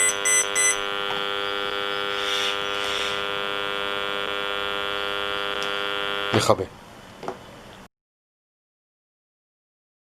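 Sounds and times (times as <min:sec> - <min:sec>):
pulsing high beep: 0:00.0 - 0:03.7
electric buzz: 0:00.0 - 0:06.5.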